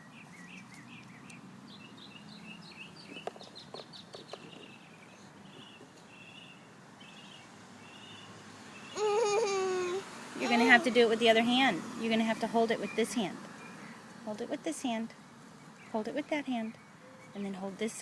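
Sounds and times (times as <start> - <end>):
bird chirping: 0.0 - 9.2, 15.2 - 17.8.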